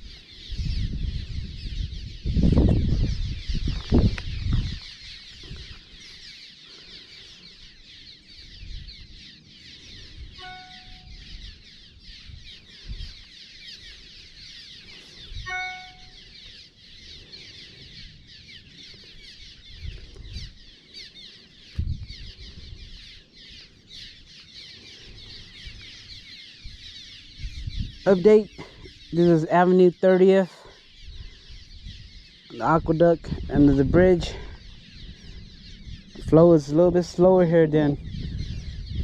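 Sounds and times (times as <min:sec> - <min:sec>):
clear pitched bird calls: 0:00.0 - 0:39.0
small birds chattering: 0:00.0 - 0:39.0.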